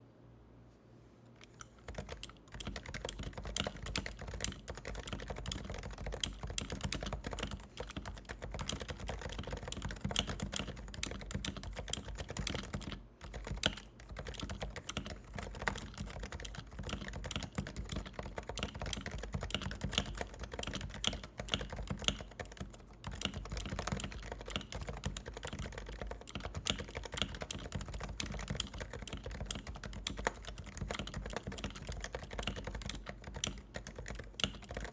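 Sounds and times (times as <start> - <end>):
fast typing on a keyboard: 1.8 - 34.9.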